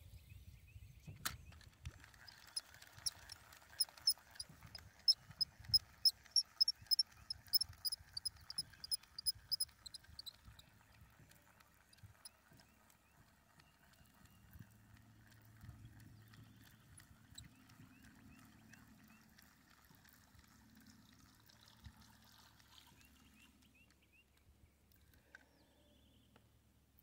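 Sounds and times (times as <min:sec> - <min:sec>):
small high chirps: 0:05.1 - 0:10.6.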